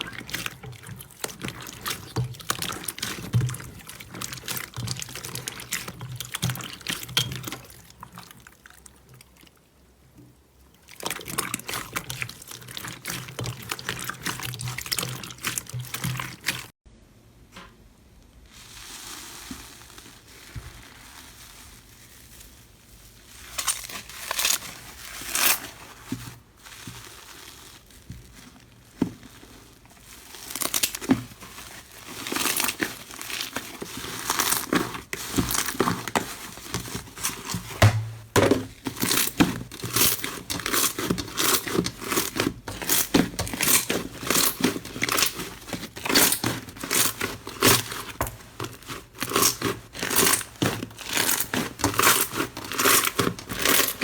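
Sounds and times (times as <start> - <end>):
slime crackling and popping: 26.6 - 54.0.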